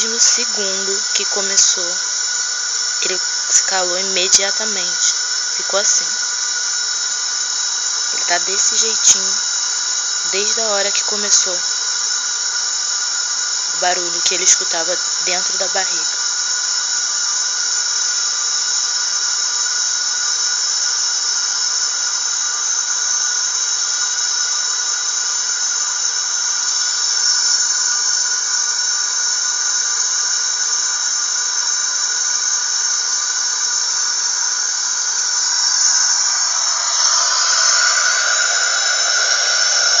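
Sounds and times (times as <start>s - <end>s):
thin high ringing tones: 0.0s - 19.3s, 32.9s - 40.0s
hissing white noise: 0.0s - 40.0s.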